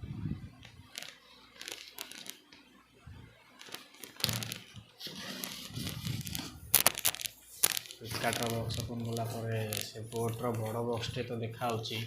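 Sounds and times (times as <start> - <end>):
packaging crinkling and tearing: 0.8 - 2.5, 3.6 - 10.8.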